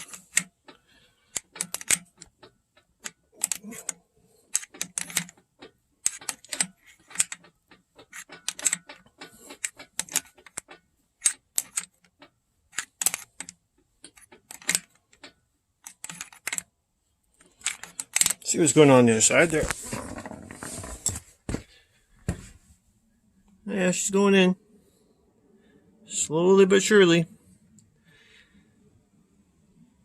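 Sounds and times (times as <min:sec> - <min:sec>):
wrench clicking: 0:00.0 - 0:16.6, 0:17.4 - 0:18.5.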